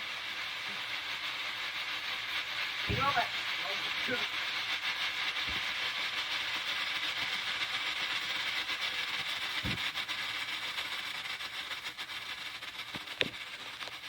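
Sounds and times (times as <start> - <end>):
firework hissing: 0.0 - 14.0
dull thump: 2.9 - 3.3, 5.5 - 5.7, 9.6 - 10.0
sharp pop: 2.9 - 3.3, 5.5 - 5.8, 9.6 - 10.1, 13.2 - 13.4.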